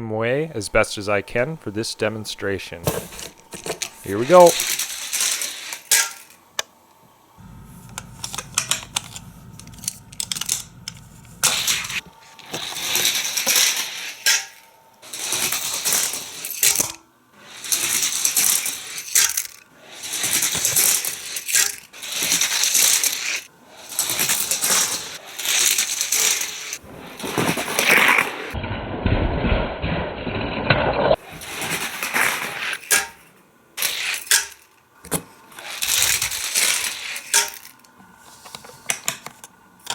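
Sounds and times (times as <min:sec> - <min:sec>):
toy car rattling along plastic track: 0:03.2 - 0:06.4, 0:07.4 - 0:28.6, 0:31.1 - 0:38.0.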